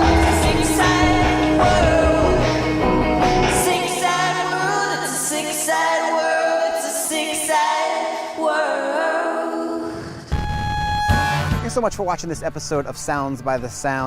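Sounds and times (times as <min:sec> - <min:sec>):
bass: 0:00.0 - 0:03.8, 0:10.3 - 0:14.0
layered singing voices: 0:00.0 - 0:10.3.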